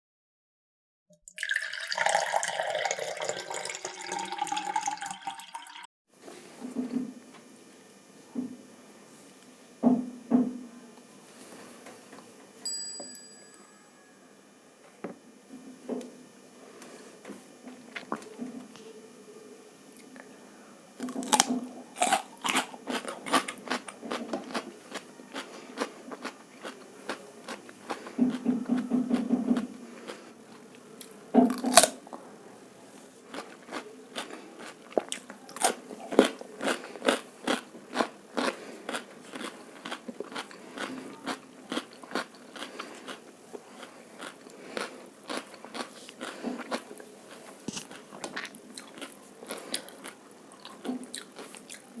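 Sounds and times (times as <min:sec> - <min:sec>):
close chewing and crunching: 0:21.0 - 0:32.3, 0:33.2 - 0:52.0.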